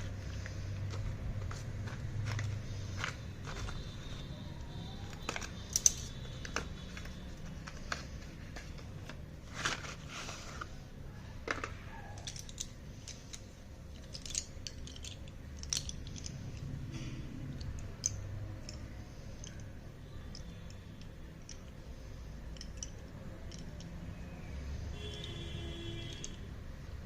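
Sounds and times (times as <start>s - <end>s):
packaging rustle: 0.0s - 10.9s
low background hum: 0.0s - 27.0s.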